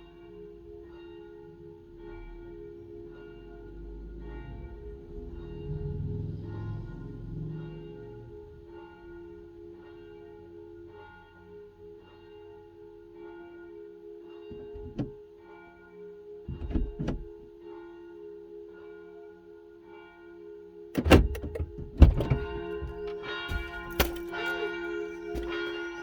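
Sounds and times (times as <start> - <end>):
church bells ringing: 0.0 - 26.0
heavy thuds: 14.5 - 15.2, 16.5 - 17.4, 21.0 - 24.7.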